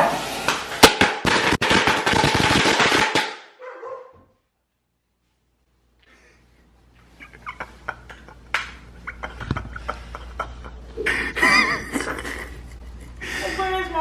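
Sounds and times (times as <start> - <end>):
firecrackers popping: 0.4 - 3.5.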